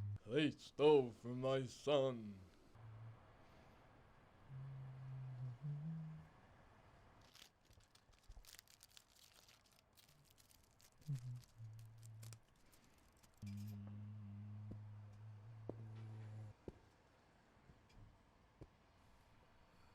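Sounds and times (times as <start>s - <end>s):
low steady hum: 0.0s - 19.9s
faint crackling and crinkling: 6.9s - 18.0s.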